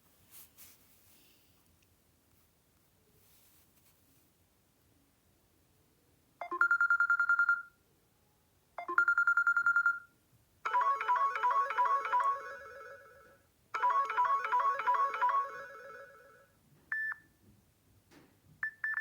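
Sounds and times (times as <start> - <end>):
trilling phone ringtone beeps: 6.4 - 7.7, 8.8 - 10.0, 10.7 - 17.2
melodic phone ringtone: 10.7 - 16.5.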